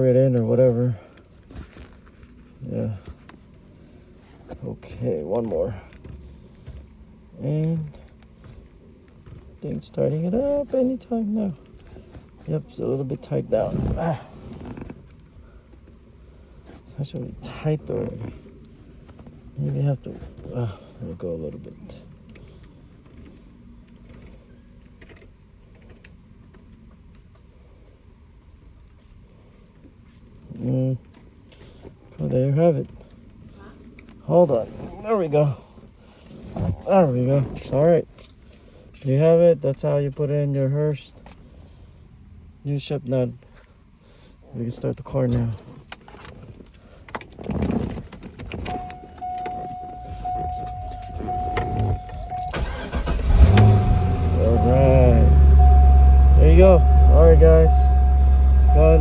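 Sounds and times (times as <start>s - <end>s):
low steady hum: 48.3s - 59.0s
electronic warning tone: 48.7s - 59.0s.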